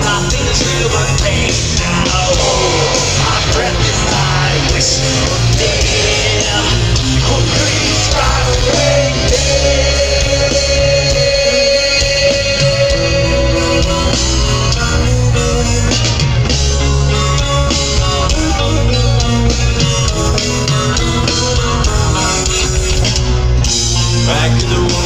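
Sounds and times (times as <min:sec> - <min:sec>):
person singing: 0:00.0 - 0:15.2
bass guitar: 0:00.0 - 0:25.0
drums: 0:00.0 - 0:25.0
electric guitars: 0:00.0 - 0:25.0.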